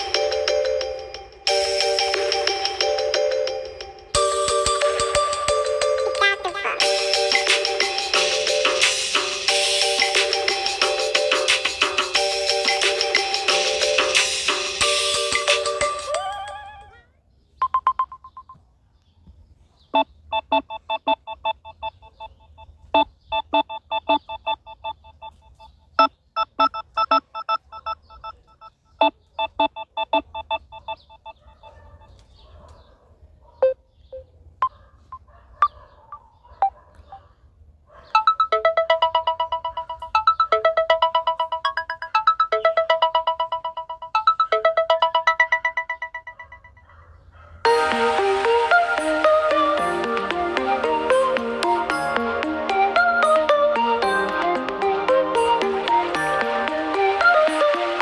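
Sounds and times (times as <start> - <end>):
fast trilling phone ring: 0.0 - 8.3, 38.2 - 46.9
scattered phone tones: 0.0 - 8.3, 17.6 - 18.6, 20.0 - 31.8, 38.2 - 46.9
beeping electronic melody: 0.0 - 16.8, 20.0 - 31.4, 38.2 - 46.8, 47.7 - 58.0.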